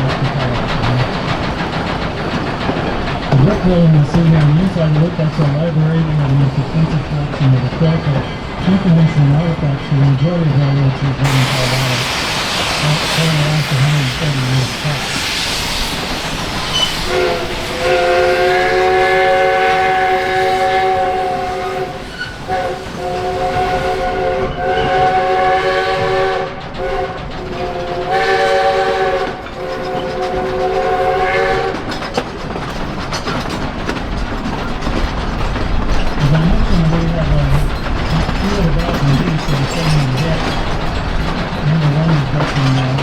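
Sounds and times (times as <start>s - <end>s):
train wheel clicks: 0.0s - 25.2s, 25.9s - 43.0s
train cars rumbling on rails: 0.0s - 43.0s
steam locomotive chime whistle: 16.6s - 31.9s.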